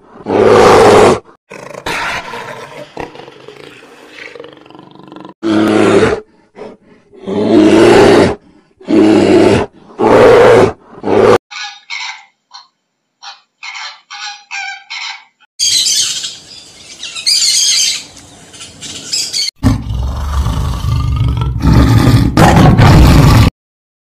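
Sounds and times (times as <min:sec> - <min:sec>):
high-pitched bird chatter: 0:11.5 - 0:19.6.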